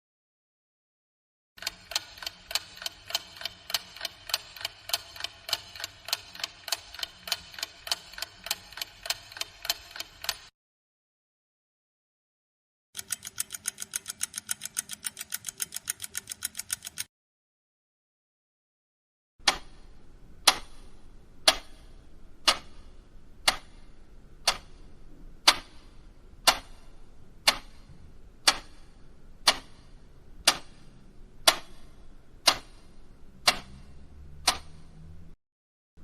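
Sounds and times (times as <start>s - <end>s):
clock ticking: 1.6s - 10.5s, 13.0s - 17.1s, 19.4s - 35.1s.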